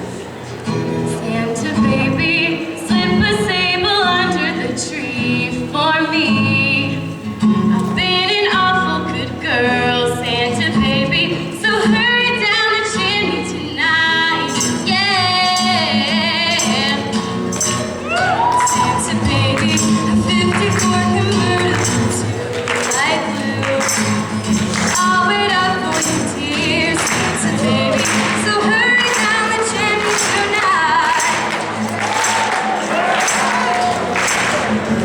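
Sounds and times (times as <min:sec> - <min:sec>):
person singing with vibrato: 0:07.8 - 0:35.0
instrumental accompaniment: 0:14.2 - 0:35.0
rhythmic percussion: 0:14.2 - 0:35.0.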